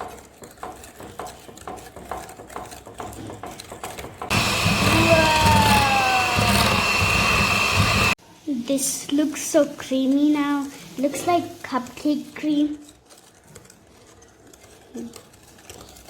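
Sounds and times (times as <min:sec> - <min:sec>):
whirring mixer with high whine: 0:04.3 - 0:08.2.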